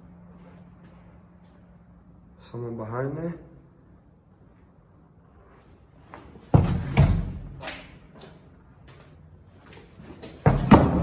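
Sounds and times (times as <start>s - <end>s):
door thudding against obstruction: 6.5s - 7.7s, 10.4s - 11.0s.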